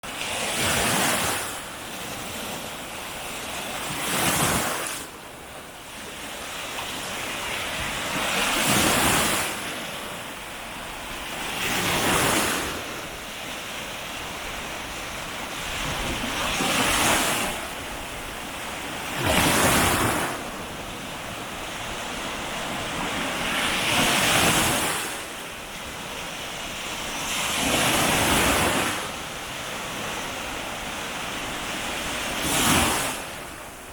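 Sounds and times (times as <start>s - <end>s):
waves breaking on beach: 0.0s - 33.9s.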